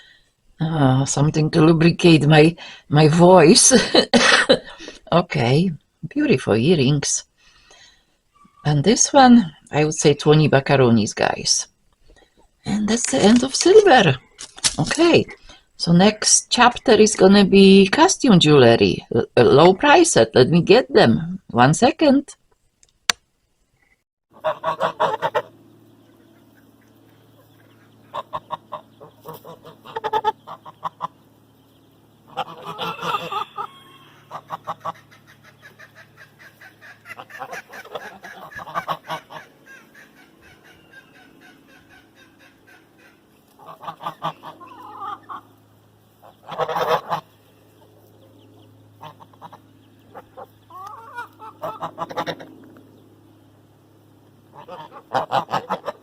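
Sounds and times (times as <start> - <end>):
faint low hum: 0.0 - 56.0
geese honking: 24.3 - 53.0, 53.8 - 56.0.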